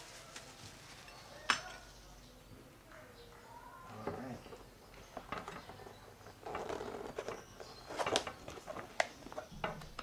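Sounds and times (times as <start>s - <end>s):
plastic wrapping crinkling: 0.0s - 1.8s.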